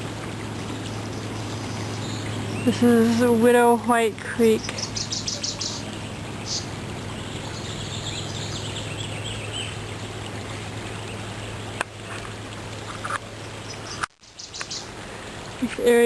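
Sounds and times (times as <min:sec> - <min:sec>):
low hum: 0:00.0 - 0:14.0
creek water flowing: 0:00.0 - 0:16.0
bird chirps: 0:04.6 - 0:09.8.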